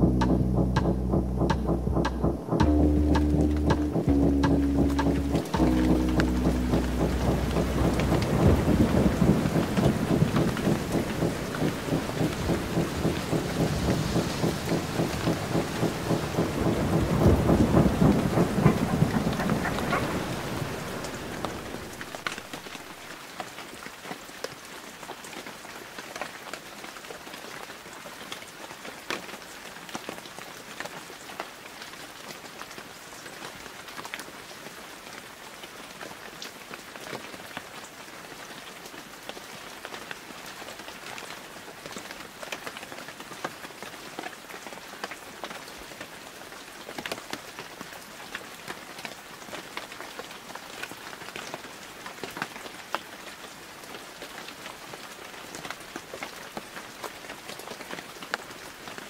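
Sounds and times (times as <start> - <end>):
low rumble of thunder: 0.0 - 22.6
steady rain falling: 0.0 - 59.0
raindrops ticking on a surface: 3.2 - 59.0.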